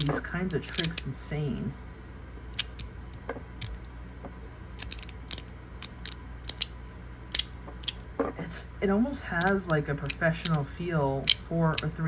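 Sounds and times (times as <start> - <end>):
magnetic fidget slider clicking: 0.0 - 1.1, 2.5 - 3.9, 4.8 - 8.1, 9.4 - 10.6, 11.2 - 12.0.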